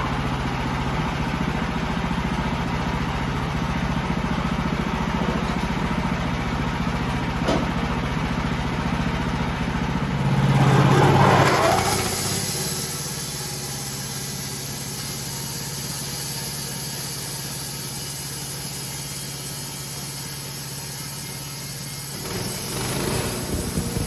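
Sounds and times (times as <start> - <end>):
sawmill engine running: 0.0 - 24.0
loud rough noise: 10.1 - 13.6, 22.1 - 24.0.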